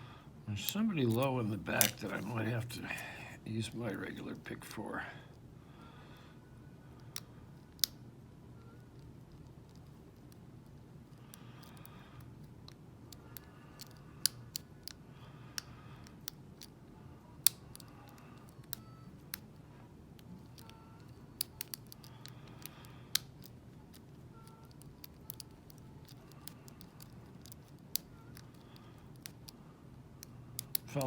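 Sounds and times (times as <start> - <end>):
lock pick clicking and scraping: 11.1 - 16.8, 20.2 - 29.6, 30.2 - 31.0.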